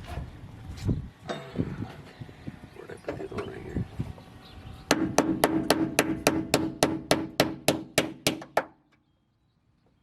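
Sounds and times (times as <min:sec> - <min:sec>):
steady low hum: 0:00.0 - 0:08.6
rapid sharp knocks: 0:04.9 - 0:08.7.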